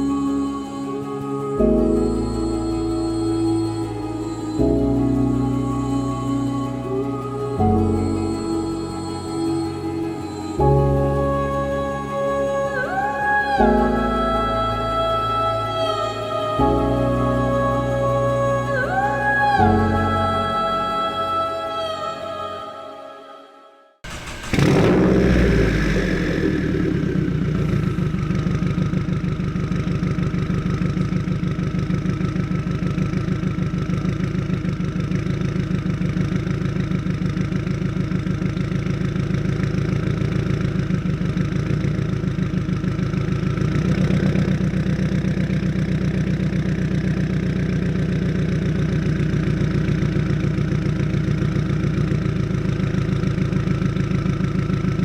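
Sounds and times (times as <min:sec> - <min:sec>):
car engine idling: 0:24.0 - 0:55.0.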